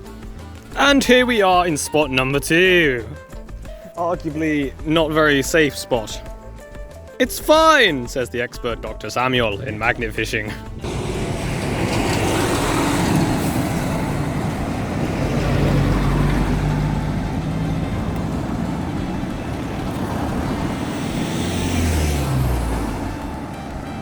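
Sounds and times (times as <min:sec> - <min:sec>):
road traffic passing: 0:10.6 - 0:24.0.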